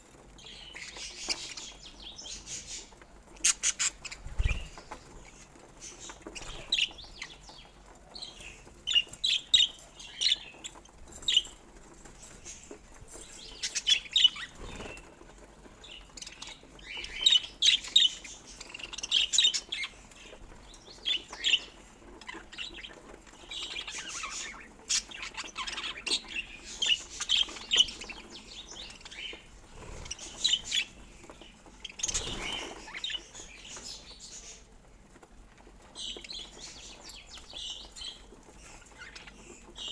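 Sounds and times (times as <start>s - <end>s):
budgerigars chirping: 0.4s - 7.7s, 15.9s - 34.6s.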